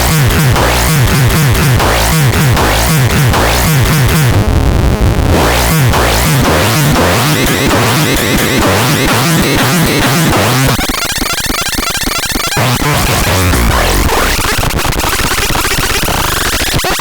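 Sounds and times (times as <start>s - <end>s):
pitch-sliding bass hits: 0.0s - 10.8s, 12.6s - 14.6s
distorted synthesizer noise: 0.0s - 17.0s.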